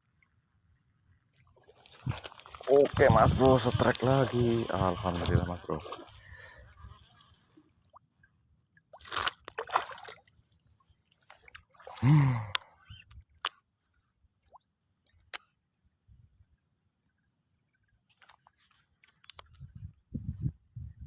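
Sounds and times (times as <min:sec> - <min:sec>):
wet squelching and splashing: 0:01.6 - 0:06.4, 0:08.9 - 0:10.5
short falling grunt: 0:12.0 - 0:12.6.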